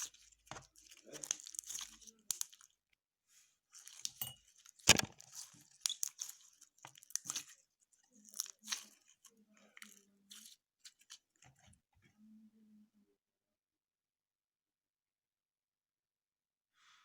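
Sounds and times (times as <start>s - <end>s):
slime squeezed by hand: 0.0s - 2.7s, 3.8s - 7.6s, 8.2s - 11.3s.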